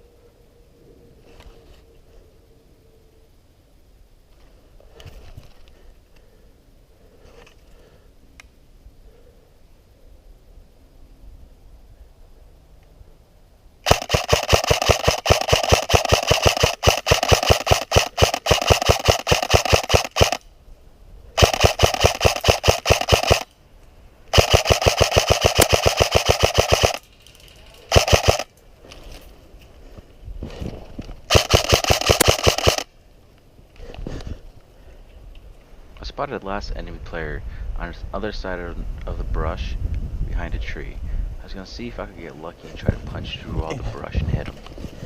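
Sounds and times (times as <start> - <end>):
airsoft gun firing full auto: 13.8 - 20.4, 21.4 - 23.5, 24.3 - 27.1, 27.9 - 28.5, 31.3 - 32.9.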